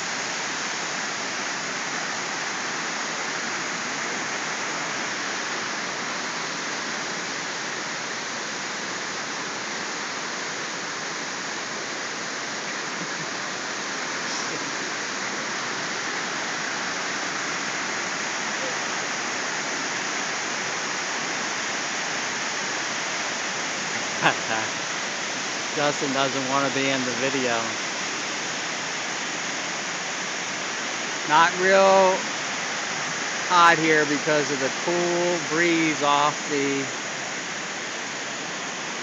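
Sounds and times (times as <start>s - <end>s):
waterfall rushing: 0.0s - 39.0s.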